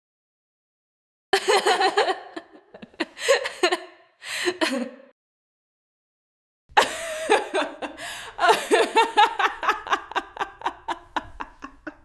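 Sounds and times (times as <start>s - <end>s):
woman laughing: 1.4s - 5.0s, 6.8s - 12.0s.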